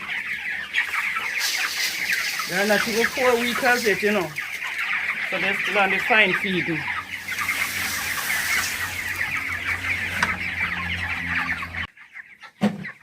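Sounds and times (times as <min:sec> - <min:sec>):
chicks peeping: 0:00.0 - 0:13.0.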